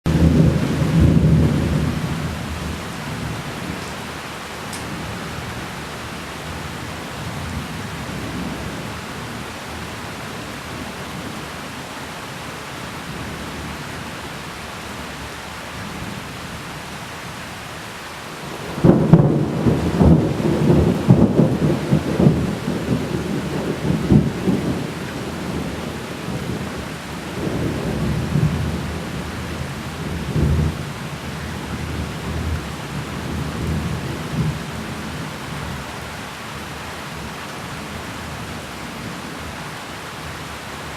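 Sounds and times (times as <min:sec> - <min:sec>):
rolling thunderclap: 0:00.1 - 0:04.0, 0:18.5 - 0:30.8
steady rain: 0:00.1 - 0:40.9.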